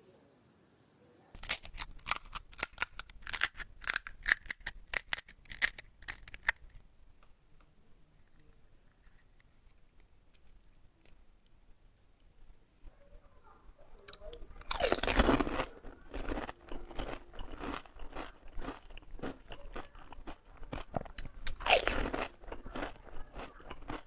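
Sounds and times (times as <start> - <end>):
sharp crisp crackles: 1.4 - 7.4.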